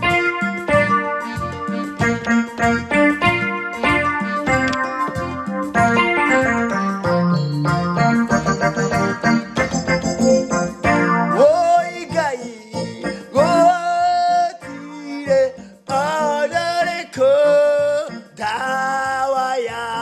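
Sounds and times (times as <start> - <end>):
instrumental accompaniment: 0.0 - 20.0
person singing held phrases: 11.4 - 20.0.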